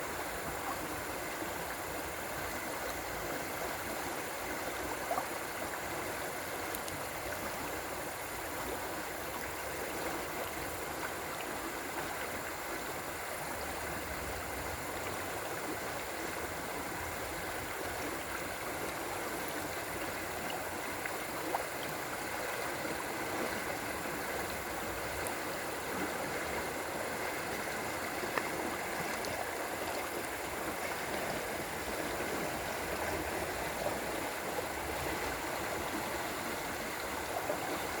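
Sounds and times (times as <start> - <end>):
river water rushing: 0.0 - 38.0
faint ticks: 6.6 - 7.0.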